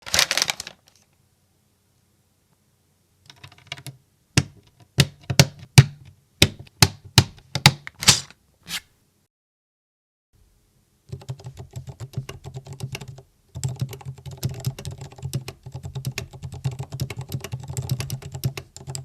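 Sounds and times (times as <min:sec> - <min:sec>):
mechanical keyboard keystrokes: 0:11.1 - 0:19.0.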